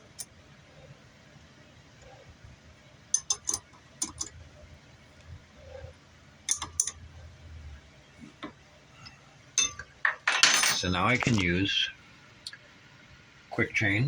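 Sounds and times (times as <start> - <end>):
metal tools clinking: 9.6 - 11.4.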